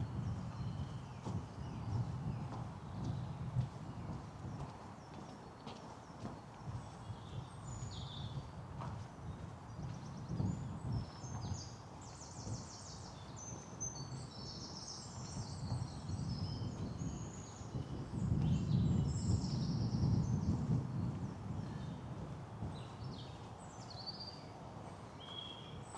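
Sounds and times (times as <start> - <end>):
soft footsteps on path: 2.5 - 7.2
songbirds singing: 22.7 - 25.9.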